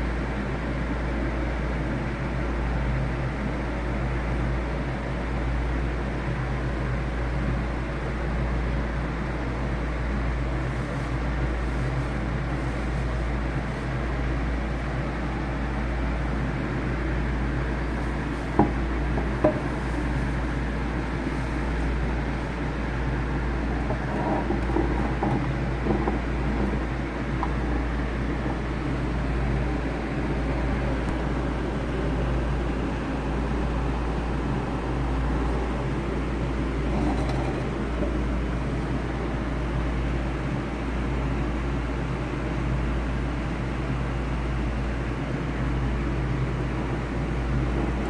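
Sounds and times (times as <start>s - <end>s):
low hum and hiss: 0.0s - 48.0s.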